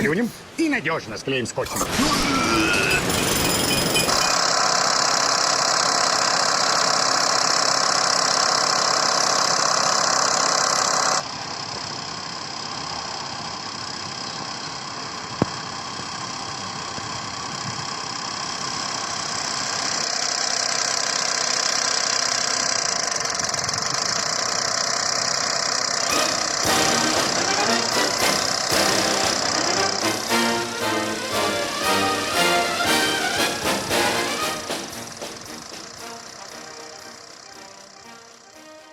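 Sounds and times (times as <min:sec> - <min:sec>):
car engine running: 0:04.2 - 0:38.8
loud hiss: 0:24.6 - 0:38.1.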